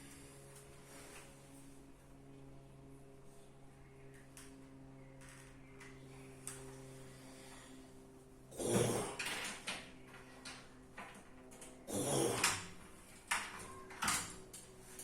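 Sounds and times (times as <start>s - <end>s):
steady low hum: 0.0s - 15.0s
person snoring: 8.5s - 9.3s, 11.9s - 12.8s.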